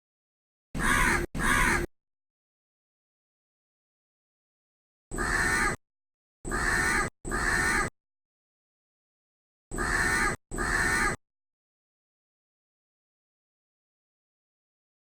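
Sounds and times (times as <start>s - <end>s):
crow cawing: 0.8s - 1.9s, 5.2s - 5.8s, 6.5s - 7.9s, 9.8s - 11.2s.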